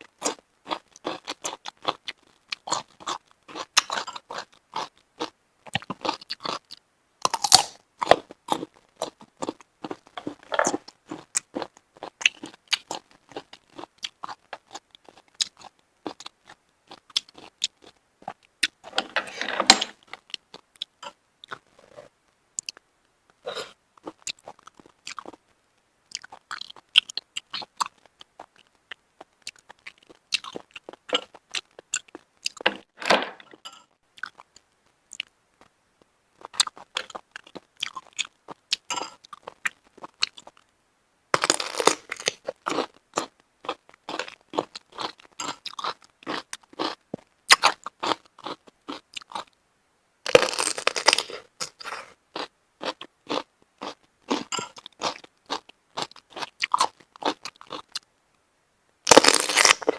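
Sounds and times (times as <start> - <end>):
noisy chewing bursts: 0.0 - 19.0, 20.0 - 25.5, 26.1 - 32.6, 34.1 - 40.8, 41.4 - 49.6, 50.3 - 58.1
person chewing crunchy shellfish: 0.0 - 22.8, 23.4 - 25.4, 26.1 - 35.3, 36.4 - 40.6, 41.4 - 49.6, 50.3 - 58.1, 59.1 - 59.9.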